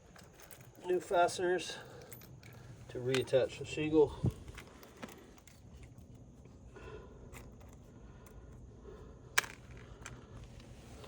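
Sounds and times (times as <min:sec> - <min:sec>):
faint rustling and scraping: 0:09.5 - 0:11.0.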